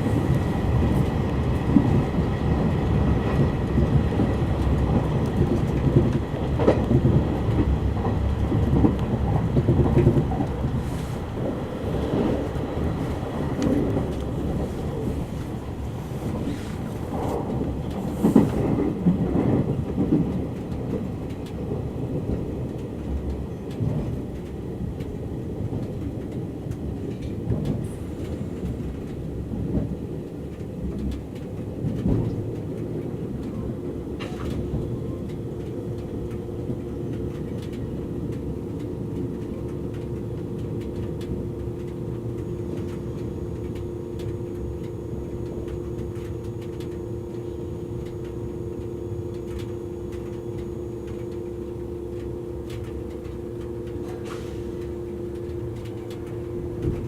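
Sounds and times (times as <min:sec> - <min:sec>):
train interior rumble with knocks: 0:00.0 - 0:57.0
electrical hum: 0:34.0 - 0:57.0.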